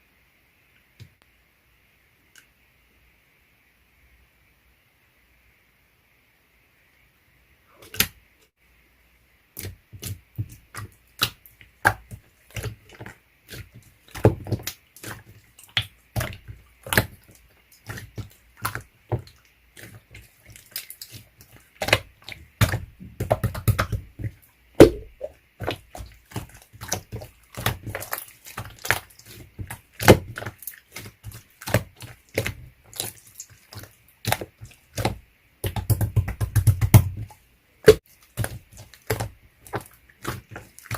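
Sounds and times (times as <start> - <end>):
slime squelching and popping: 9.6 - 40.9.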